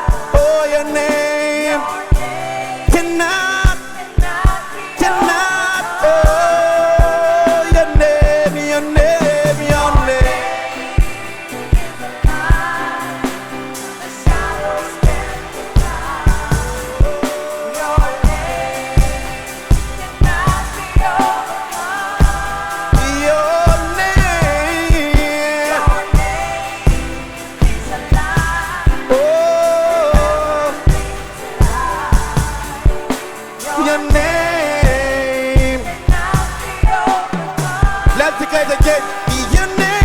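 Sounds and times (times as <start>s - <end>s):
drum kit beating: 0.0s - 40.0s.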